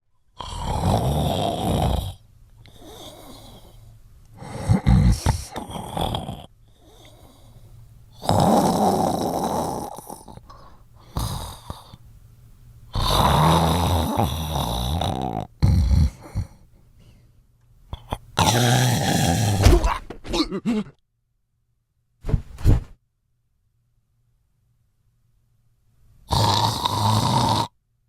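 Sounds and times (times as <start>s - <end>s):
heavy rasping snoring: 0.4s - 3.8s, 4.4s - 7.6s, 8.2s - 12.0s, 12.9s - 16.6s, 18.0s - 19.7s, 26.3s - 27.8s
quiet breaths: 2.0s - 13.2s, 15.4s - 18.4s.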